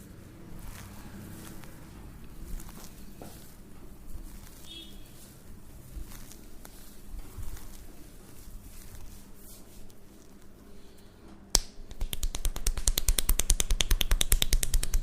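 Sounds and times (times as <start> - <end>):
hands rubbing head: 0.0 - 10.6, 11.9 - 15.0
sharp snap: 11.5 - 15.0
fast tapping strikes: 12.0 - 15.0.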